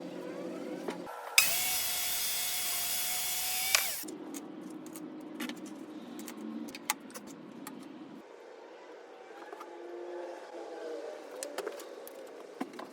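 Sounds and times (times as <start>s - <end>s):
power tool running: 1.4s - 4.0s.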